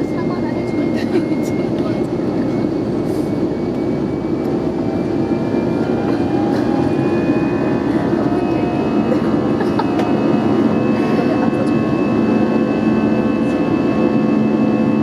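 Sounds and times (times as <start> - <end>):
jet engine and airflow rumble: 0.0 - 15.0.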